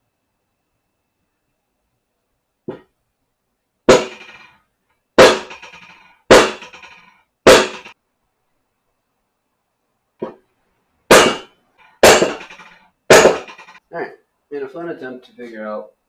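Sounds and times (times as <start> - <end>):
hammer striking metal: 3.9 - 4.5, 5.2 - 8.0, 11.1 - 13.8.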